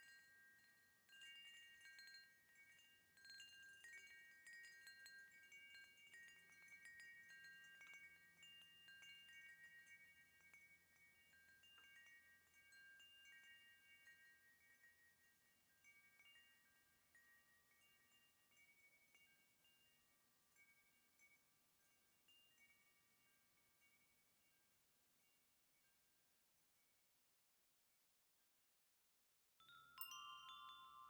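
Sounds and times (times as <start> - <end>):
wind chime ringing: 29.6 - 31.0.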